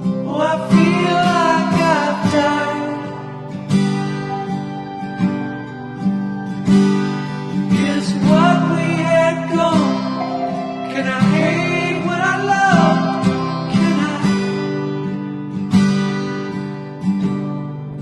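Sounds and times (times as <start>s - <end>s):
strummed acoustic guitar: 0.0s - 18.0s
person singing long notes: 10.2s - 14.3s.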